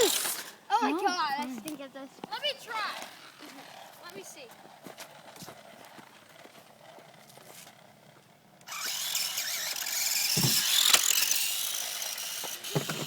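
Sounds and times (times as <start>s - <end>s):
toy motor whining: 0.0s - 1.2s, 8.6s - 13.0s.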